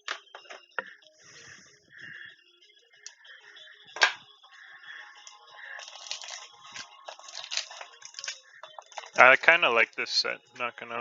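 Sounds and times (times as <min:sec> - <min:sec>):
foil wrapper crinkling and tearing: 0:05.8 - 0:09.2.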